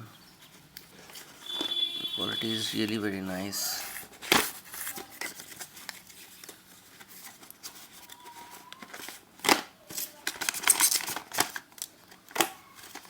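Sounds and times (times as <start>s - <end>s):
packaging rustling and clicking: 3.9s - 13.0s.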